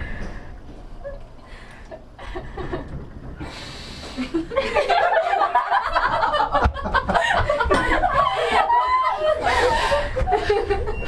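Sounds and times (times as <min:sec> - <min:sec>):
loud choppy laughter: 0:04.3 - 0:11.0.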